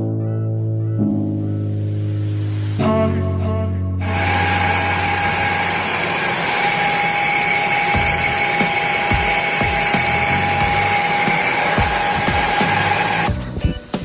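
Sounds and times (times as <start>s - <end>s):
power tool motor whining and grinding: 4.0s - 13.3s.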